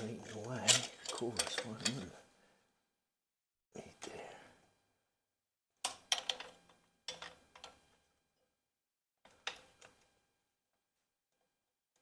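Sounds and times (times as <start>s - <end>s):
metal hand tools clinking: 0.2s - 2.1s.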